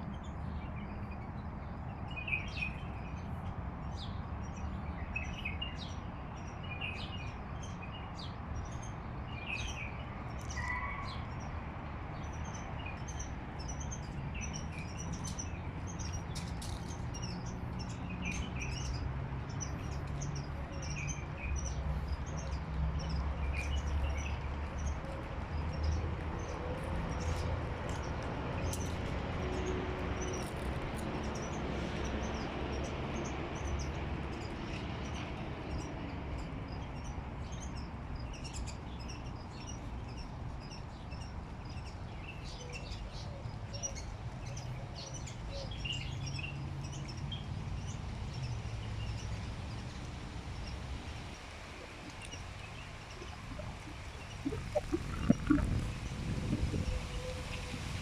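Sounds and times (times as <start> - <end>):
small birds chirping: 0.0 - 57.6
steady low rumble: 52.8 - 56.9.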